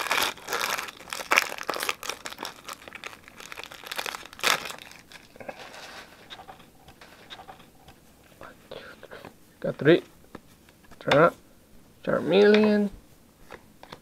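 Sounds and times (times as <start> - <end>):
foil wrapper crinkling and tearing: 0.0 - 6.2.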